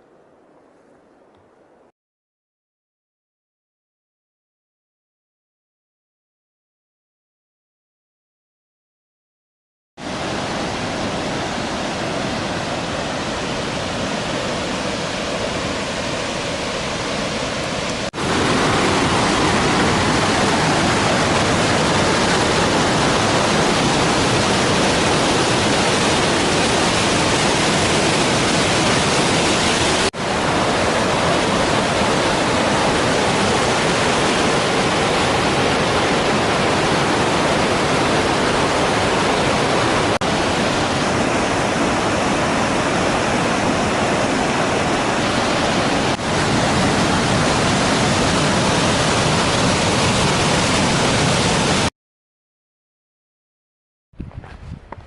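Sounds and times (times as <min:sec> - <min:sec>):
waterfall rushing: 0:10.0 - 0:51.9.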